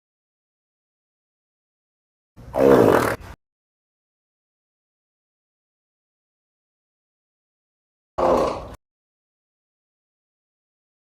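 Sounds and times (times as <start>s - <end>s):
fart sound effect: 2.5s - 3.4s, 8.2s - 8.8s.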